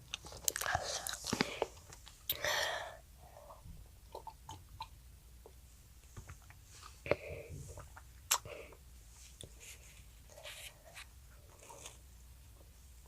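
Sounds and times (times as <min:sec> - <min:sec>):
child chewing food: 0:00.0 - 0:02.4, 0:07.7 - 0:08.8
mouth clicks and smacks: 0:04.1 - 0:05.0.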